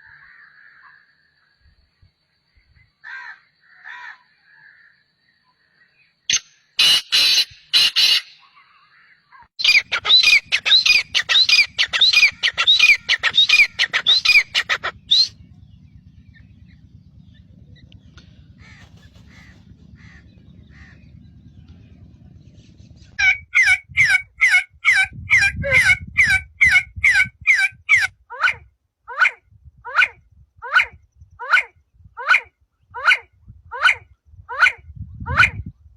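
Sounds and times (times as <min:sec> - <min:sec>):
bird calling in fast runs: 0:09.6 - 0:28.1.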